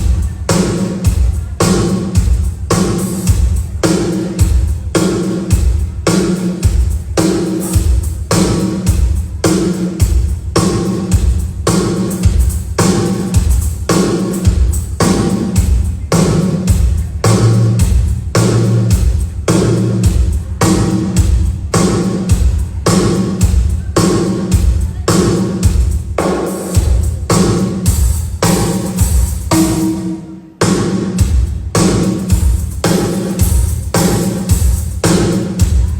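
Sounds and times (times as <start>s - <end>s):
hi-hat: 0.0s - 30.1s, 31.2s - 35.9s.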